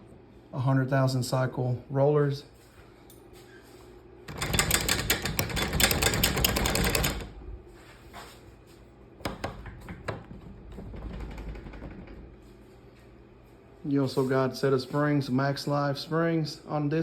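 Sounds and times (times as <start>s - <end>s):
rapid mechanical clattering: 4.3s - 7.4s, 9.2s - 12.4s.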